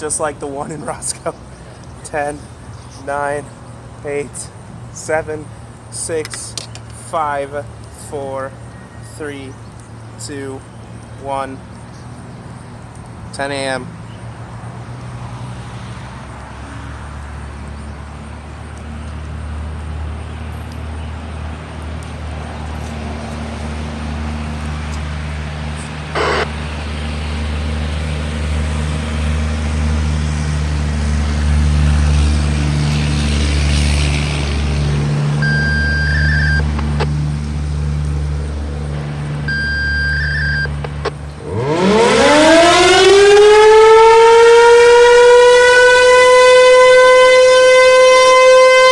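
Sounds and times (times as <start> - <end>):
warning siren spinning up: 24.0 - 27.8, 34.5 - 37.6, 39.0 - 48.9
radio activation tones: 25.7 - 26.6, 35.4 - 37.2, 39.0 - 41.7.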